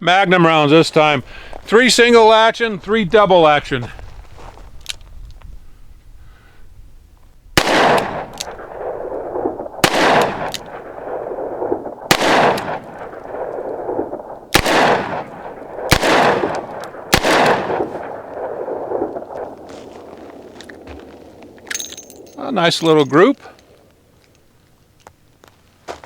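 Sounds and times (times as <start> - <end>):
revolver gunshots with echo: 7.6 - 20.4.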